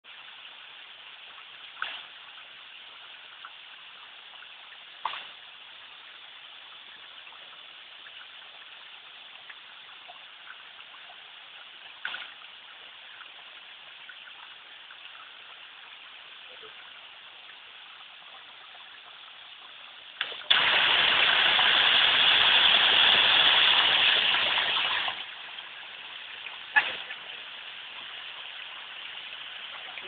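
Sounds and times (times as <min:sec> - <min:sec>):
sharp knocks or splashes: 0:05.0 - 0:05.4
waterfall rushing: 0:20.4 - 0:25.3.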